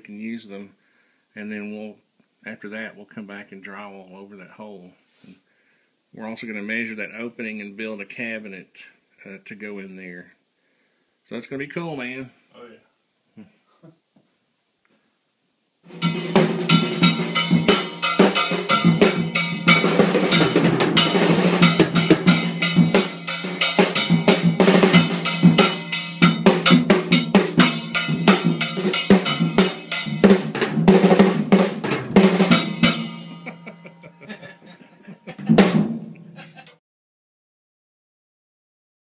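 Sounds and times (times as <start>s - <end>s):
drum kit playing: 15.9s - 36.8s.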